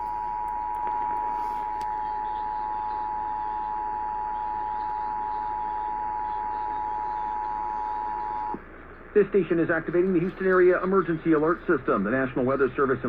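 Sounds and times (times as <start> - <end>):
two-tone alarm: 0.0 - 8.6
radio static hiss: 0.0 - 13.0.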